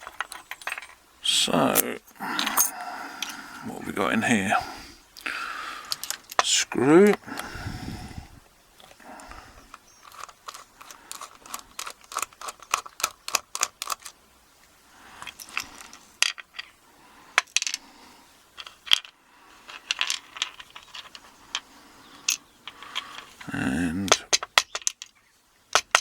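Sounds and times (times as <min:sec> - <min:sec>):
metal parts and tools clinking: 0:00.0 - 0:03.4, 0:05.8 - 0:07.2, 0:15.2 - 0:16.8, 0:18.6 - 0:21.6, 0:24.1 - 0:26.0
quick metal clicks: 0:09.7 - 0:14.2.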